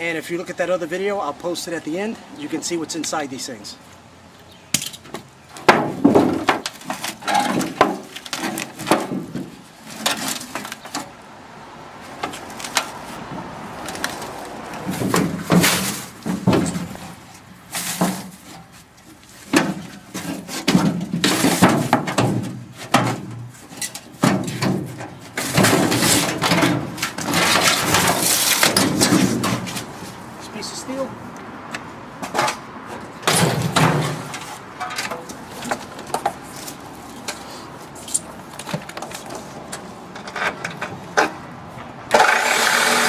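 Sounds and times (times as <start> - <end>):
metal clanks and scrapes: 5.7 - 11.1, 14.0 - 30.2, 33.2 - 38.3.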